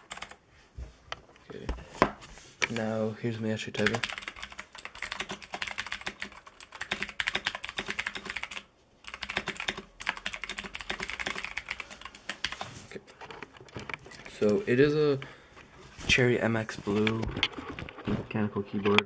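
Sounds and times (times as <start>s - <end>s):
clicky mechanical keyboard typing: 0.0s - 0.4s, 3.8s - 12.7s.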